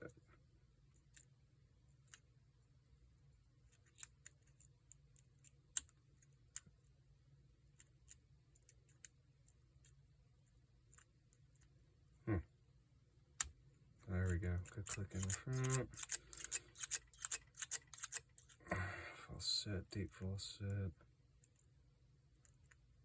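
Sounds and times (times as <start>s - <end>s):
lock pick clicking in padlock: 14.8s - 18.6s.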